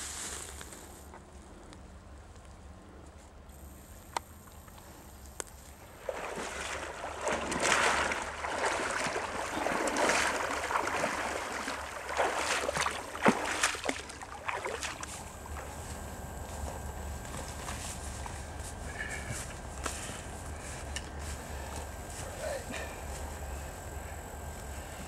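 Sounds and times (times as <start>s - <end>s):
water sloshing and splashing: 5.8s - 16.0s.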